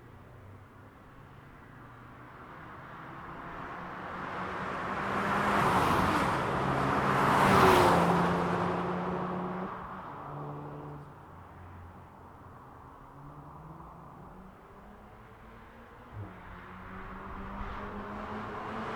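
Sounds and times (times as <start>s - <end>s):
car driving past: 3.5s - 11.2s, 13.0s - 18.9s.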